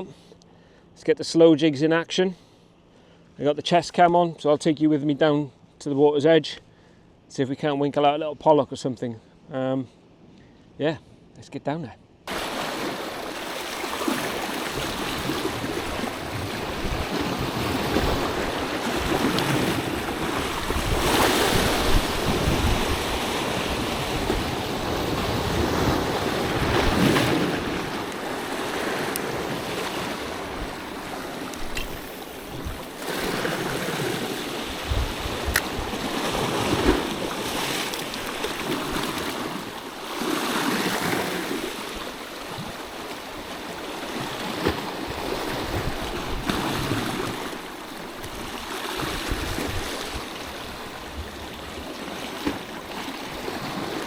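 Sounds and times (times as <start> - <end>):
sea waves washing on shore: 12.3 - 54.0
wind buffeting microphone: 15.3 - 33.6, 34.6 - 37.1, 45.1 - 46.6, 49.1 - 50.3.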